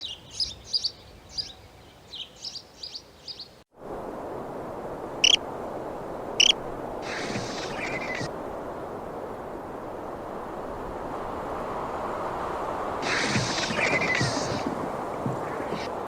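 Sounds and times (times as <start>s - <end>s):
small bird chirping: 0.0s - 3.6s, 6.4s - 8.3s
steady rushing noise: 3.7s - 16.0s
short sharp high calls: 6.4s - 8.2s.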